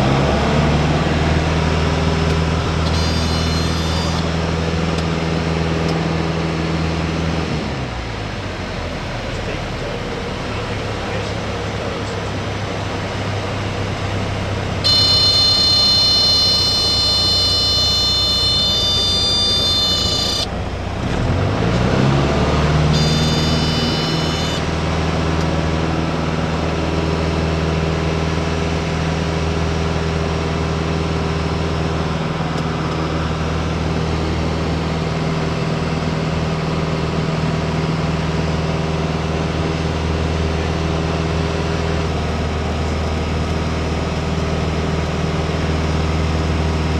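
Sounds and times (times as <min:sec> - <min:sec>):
light aircraft engine drone: 0:00.0 - 0:46.9
stall warning horn: 0:02.6 - 0:04.4, 0:14.8 - 0:24.8.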